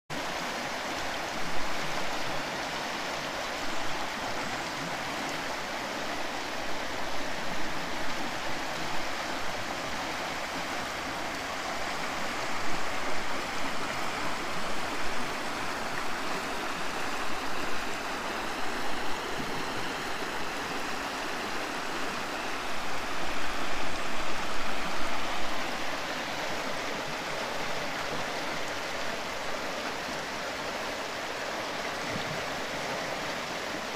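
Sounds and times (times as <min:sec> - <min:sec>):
stream rushing and splashing: 0:00.1 - 0:33.9.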